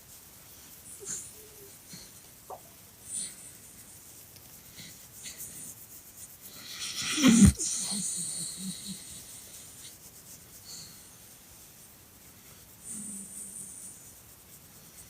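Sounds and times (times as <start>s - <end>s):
dog breathing: 0.8s - 4.0s, 6.4s - 10.0s, 12.8s - 14.1s
dog snorting: 0.9s - 3.8s, 6.5s - 10.0s, 12.8s - 14.0s.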